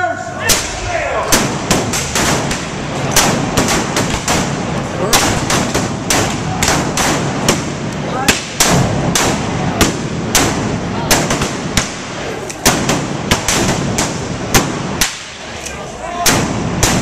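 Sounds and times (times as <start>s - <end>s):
voices: 0.0s - 1.4s, 4.5s - 7.0s, 7.9s - 8.7s, 15.2s - 16.5s
gunshots: 0.4s - 15.6s, 16.2s - 17.0s.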